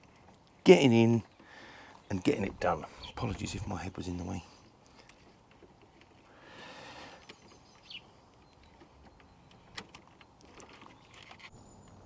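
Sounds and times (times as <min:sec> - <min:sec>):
brief rustle: 0:08.5 - 0:11.6.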